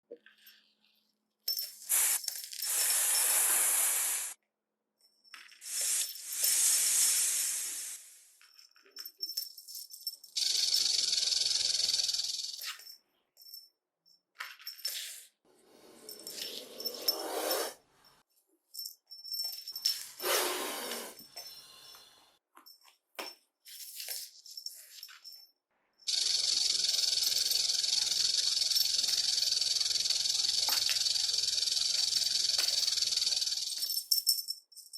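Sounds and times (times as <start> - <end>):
snake hissing: 1.9 - 4.4, 5.7 - 8.3, 20.2 - 21.3
faint high jingle: 8.4 - 34.9.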